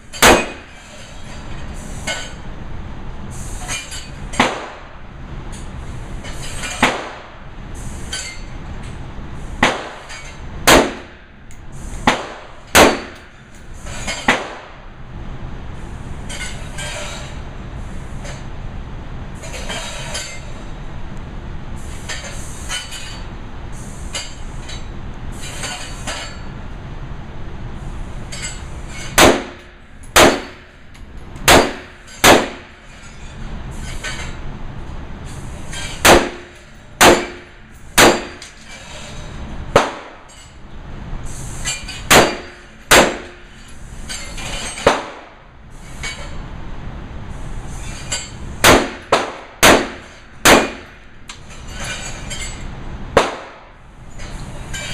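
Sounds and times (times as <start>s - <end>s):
steady background noise: 0.0s - 54.9s
rifle shots: 0.2s - 0.6s, 10.7s - 11.0s, 12.1s - 13.2s, 29.2s - 29.5s, 30.2s - 30.5s, 31.5s - 32.7s, 36.1s - 36.4s, 38.0s - 38.4s, 42.1s - 43.3s, 48.7s - 50.8s.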